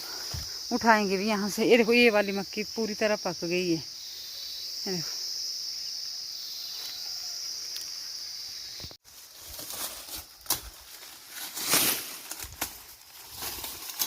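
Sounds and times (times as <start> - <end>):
crickets chirping: 0.0 - 14.0
dry plants rustling and crackling: 8.8 - 14.0.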